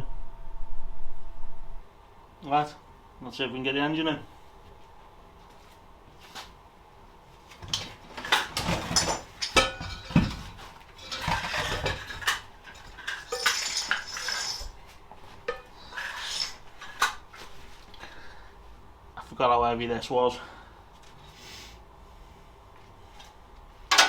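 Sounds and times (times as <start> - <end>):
metal clanking and rattling: 7.6 - 17.1.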